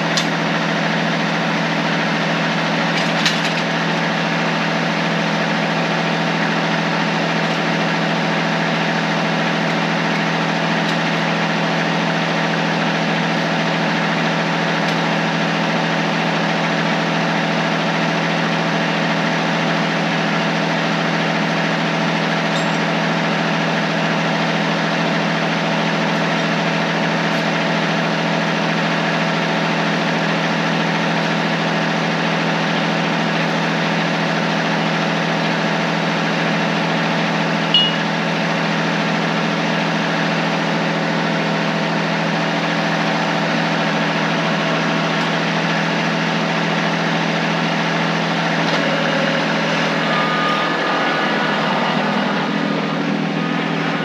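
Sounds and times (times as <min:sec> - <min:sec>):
diesel tractor engine running: 0:00.0 - 0:54.0.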